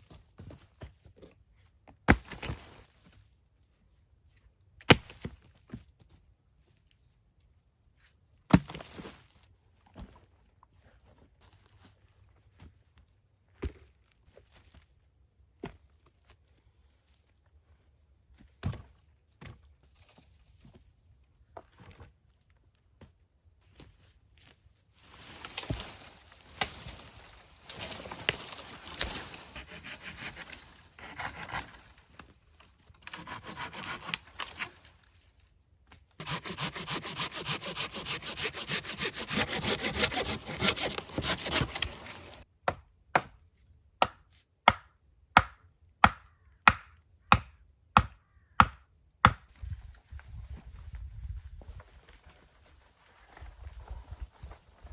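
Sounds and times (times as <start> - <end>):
hand saw cutting wood: 28.9 - 31.8, 33.0 - 34.8, 36.2 - 42.4.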